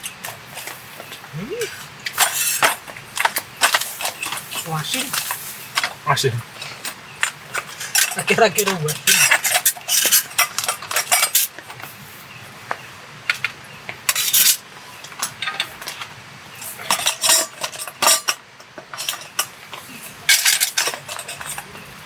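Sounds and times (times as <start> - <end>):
cutlery scraping and clinking dishes: 6.6 - 11.5, 16.8 - 21.6.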